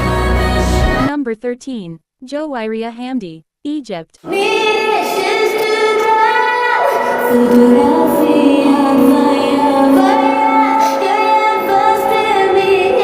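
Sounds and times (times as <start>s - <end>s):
backing music: 4.3s - 13.0s.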